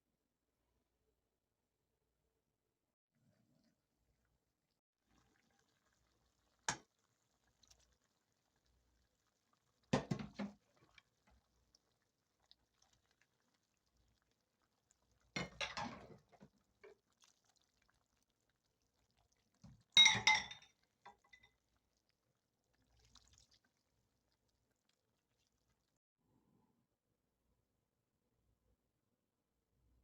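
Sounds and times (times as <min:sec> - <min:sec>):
liquid pouring: 0:05.0 - 0:26.0
dishes and utensils clinking: 0:15.4 - 0:16.2, 0:20.0 - 0:21.5.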